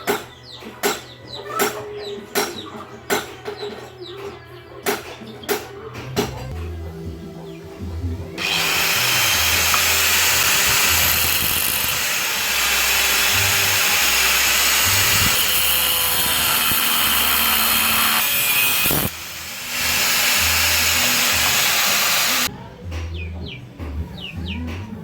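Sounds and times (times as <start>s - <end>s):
background music with bass: 5.3s - 25.0s
power tool running: 8.4s - 22.5s.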